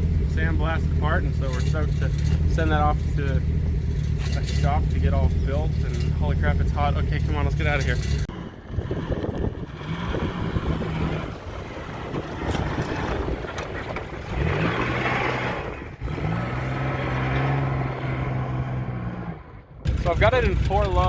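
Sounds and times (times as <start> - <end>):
rough rolling noise: 0.0 - 8.4, 10.2 - 15.9, 19.9 - 21.0
vehicle engine accelerating: 0.0 - 21.0.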